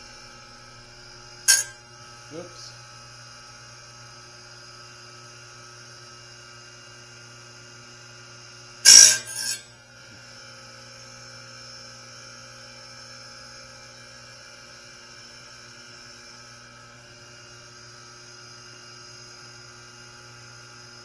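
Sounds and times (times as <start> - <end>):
steady electric hum: 0.0 - 3.9, 8.9 - 9.7
grinding scrape on saw blade: 1.5 - 1.8, 8.8 - 9.7.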